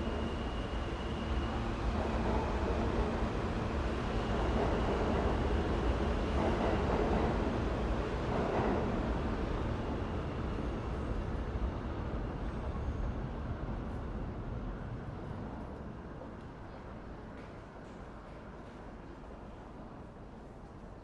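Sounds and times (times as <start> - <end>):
low rumble of trains: 0.0 - 21.0.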